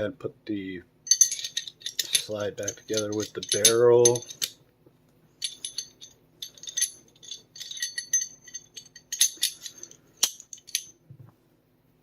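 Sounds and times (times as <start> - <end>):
metal gun parts clinking: 1.1 - 4.6, 5.4 - 11.0.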